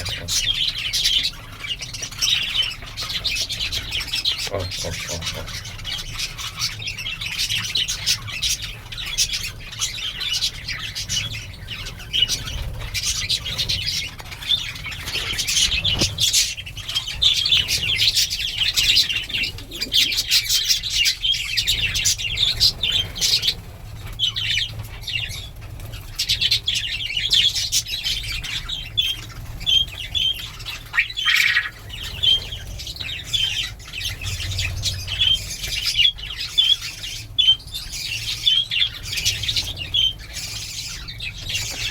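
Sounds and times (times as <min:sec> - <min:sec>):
small birds chirping: 0:00.0 - 0:41.9
wings flapping: 0:12.3 - 0:16.9.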